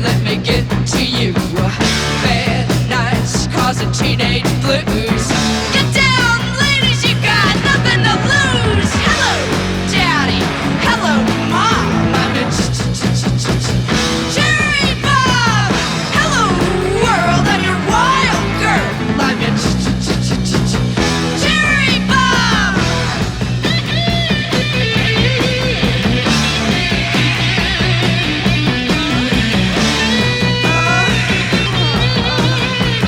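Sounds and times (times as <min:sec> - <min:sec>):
rock band music: 0:00.0 - 0:33.0
sliding bending lead guitar line: 0:13.8 - 0:33.0.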